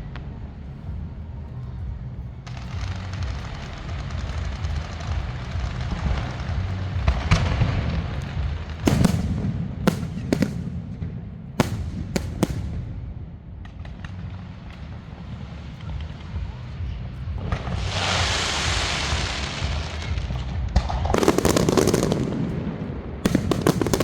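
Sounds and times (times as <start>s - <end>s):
fireworks crackling: 0.0s - 24.0s
low rumble: 0.0s - 24.0s
firework shells bursting: 2.5s - 13.1s, 21.1s - 22.5s, 23.3s - 24.0s.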